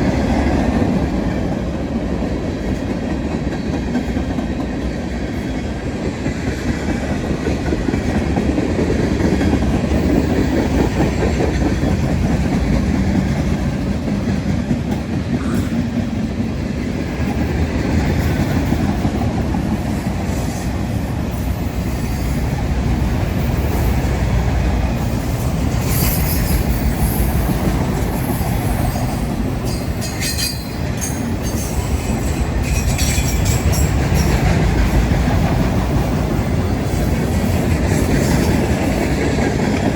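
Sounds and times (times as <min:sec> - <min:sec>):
freight train wheels clacking: 0:00.0 - 0:39.9
train wheel squeals: 0:25.0 - 0:34.5.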